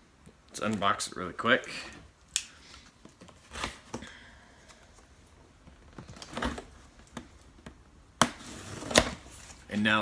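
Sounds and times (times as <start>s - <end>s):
cardboard scrape: 8.4s - 9.6s.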